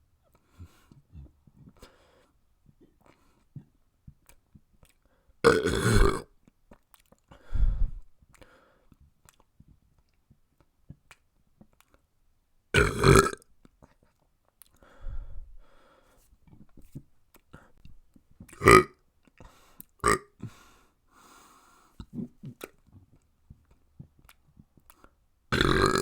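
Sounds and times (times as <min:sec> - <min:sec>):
soft low mouth sound: 0:00.2 - 0:12.0, 0:12.8 - 0:26.0
faint mouth clicks: 0:02.8 - 0:05.1, 0:06.7 - 0:08.6, 0:09.2 - 0:12.0, 0:13.7 - 0:14.9, 0:22.0 - 0:25.2
person burping: 0:05.5 - 0:06.3, 0:12.8 - 0:13.4, 0:18.6 - 0:19.0, 0:20.0 - 0:20.3, 0:25.6 - 0:26.0.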